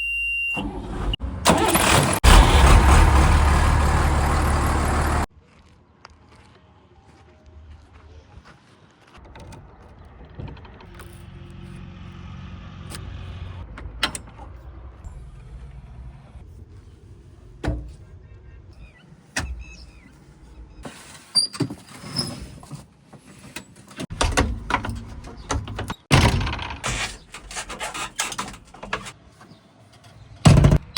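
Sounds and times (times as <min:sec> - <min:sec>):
diesel engine droning: 0:00.6 - 0:05.3, 0:10.0 - 0:20.8
rough scraping and clattering: 0:26.4 - 0:30.3.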